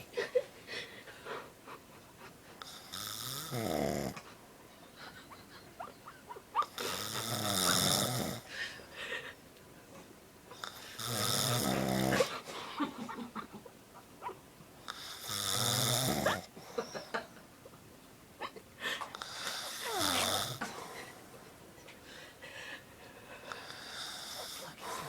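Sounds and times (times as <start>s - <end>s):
quiet breathing: 0.0s - 3.3s, 6.8s - 13.0s, 18.7s - 25.0s
man snoring: 2.7s - 4.2s, 6.8s - 8.5s, 10.6s - 12.3s, 14.9s - 16.5s, 19.2s - 20.6s.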